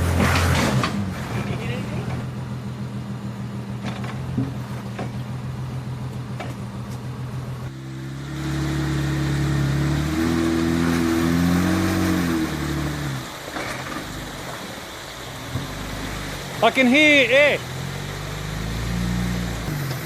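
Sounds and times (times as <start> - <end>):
vehicle engine idling and revving: 0.0 - 20.0.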